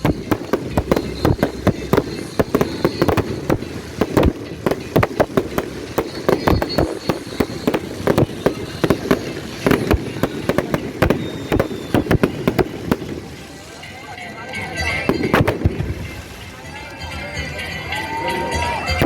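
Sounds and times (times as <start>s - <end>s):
fireworks bangs and cracks: 0.0s - 16.9s.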